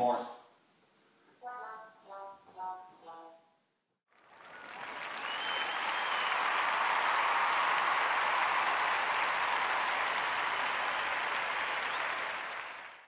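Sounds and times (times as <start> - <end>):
crowd applause: 4.1 - 13.0.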